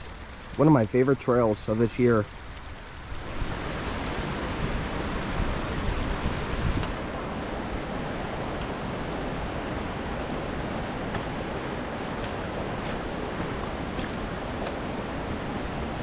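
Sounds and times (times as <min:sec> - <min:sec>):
waterfall rushing: 0:03.2 - 0:16.0.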